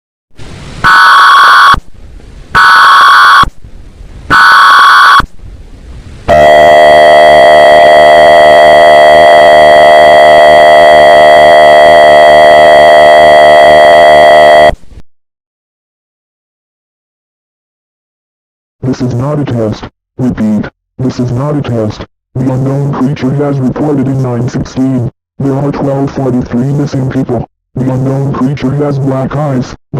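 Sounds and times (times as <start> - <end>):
steady attention tone: 6.3 - 14.8.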